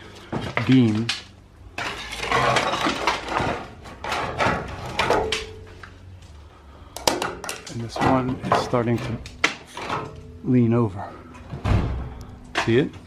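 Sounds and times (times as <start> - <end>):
prying tool scraping and knocking: 1.8 - 5.7.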